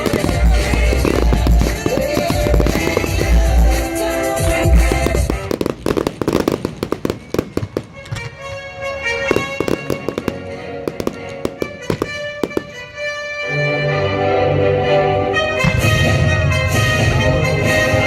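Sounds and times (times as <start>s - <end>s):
soundtrack music with held notes: 0.0s - 5.7s, 7.3s - 18.0s
fireworks crackling and popping: 0.0s - 12.9s.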